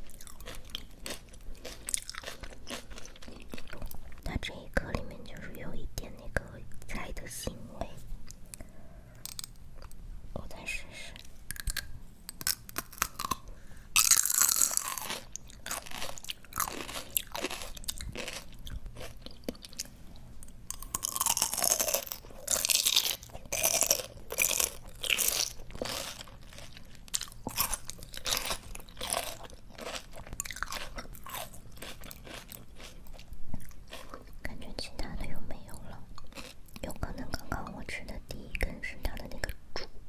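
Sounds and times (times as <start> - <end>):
crunching and chewing raw greens: 0.0 - 4.3, 8.2 - 10.0, 11.2 - 34.4, 36.1 - 37.0.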